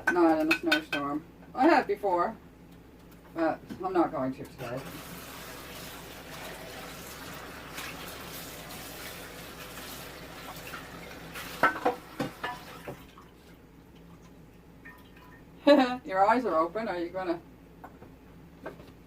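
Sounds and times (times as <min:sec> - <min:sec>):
tap running into sink: 0:11.4 - 0:13.1
dishes clinking: 0:11.6 - 0:13.0.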